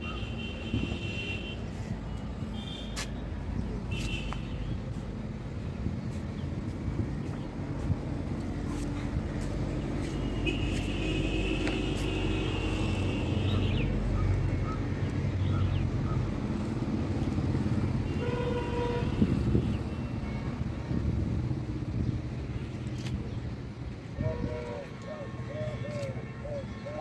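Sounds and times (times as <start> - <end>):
vehicle horns: 0.0 - 3.2, 3.9 - 4.9, 10.0 - 14.0, 18.0 - 20.7
road traffic rumble: 0.0 - 27.0.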